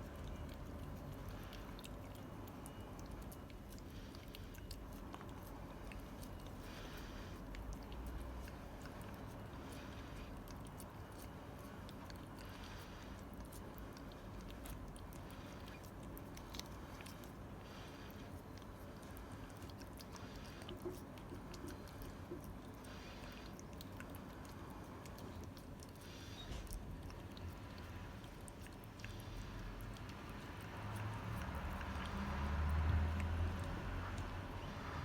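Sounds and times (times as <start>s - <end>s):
cat licking and smacking: 0.0s - 35.0s.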